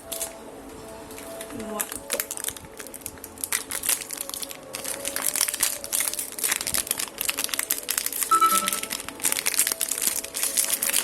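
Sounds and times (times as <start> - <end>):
plastic packaging crinkling: 0.0 - 11.0
brief high tone: 8.3 - 9.0.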